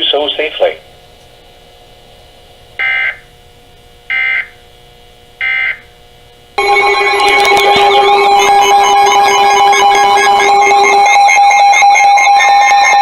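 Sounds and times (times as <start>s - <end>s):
continuous electronic tone: 2.8s - 3.3s, 4.1s - 4.6s, 5.4s - 5.9s, 6.6s - 13.0s
digital data warble: 6.6s - 13.0s.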